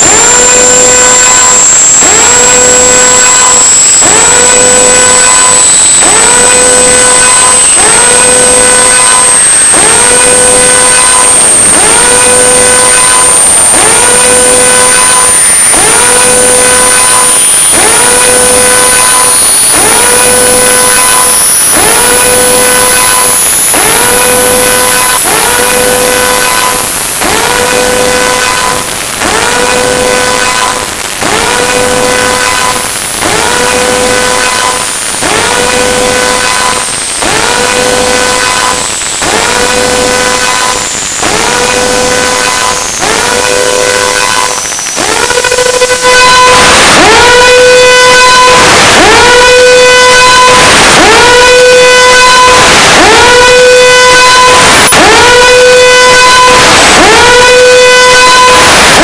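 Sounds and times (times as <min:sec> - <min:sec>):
high-pitched whine: 0:00.0 - 0:29.8
siren-like tone: 0:00.0 - 0:59.0.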